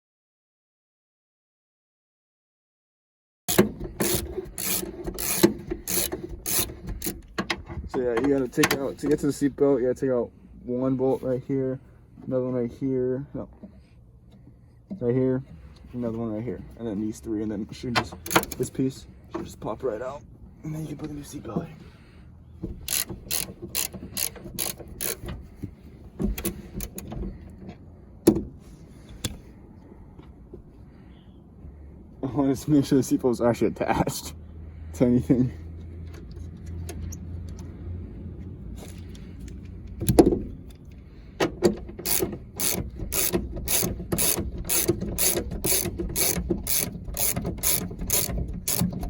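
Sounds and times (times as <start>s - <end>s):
hand ratchet clicking: 3.5s - 7.5s, 18.2s - 18.7s, 22.8s - 25.4s, 26.3s - 27.1s, 42.0s - 49.0s.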